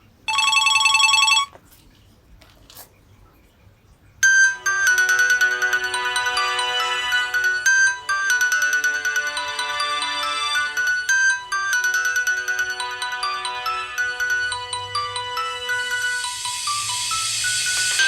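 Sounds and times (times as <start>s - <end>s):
polyphonic ringtone melody: 0.3s - 1.5s, 4.2s - 18.0s
steady electronic tone: 15.5s - 18.0s.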